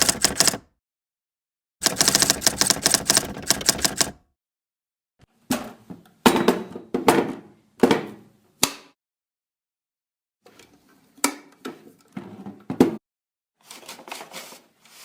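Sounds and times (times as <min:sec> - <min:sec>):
typewriter keys clicking: 0:00.0 - 0:00.6, 0:01.8 - 0:04.2.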